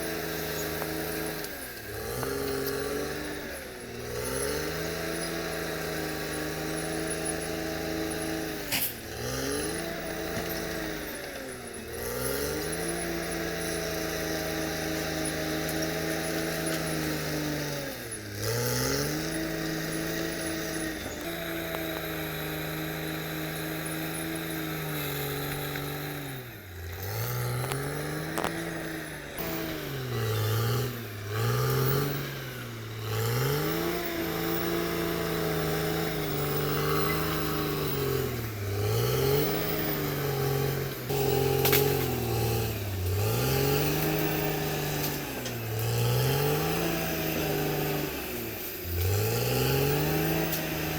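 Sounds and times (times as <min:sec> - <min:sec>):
bulldozer diesel engine revving: 0:00.0 - 0:50.9.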